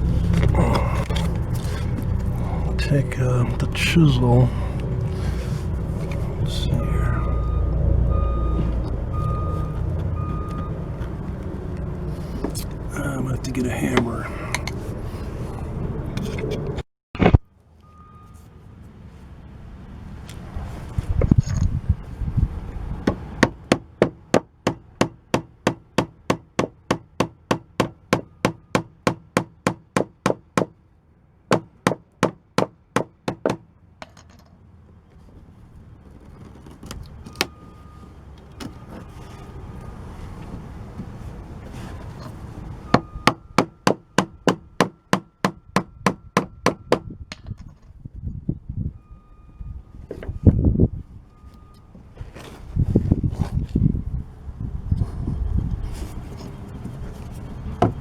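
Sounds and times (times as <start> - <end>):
hammer striking chisel: 23.1 - 30.8, 31.5 - 33.6, 42.9 - 47.5.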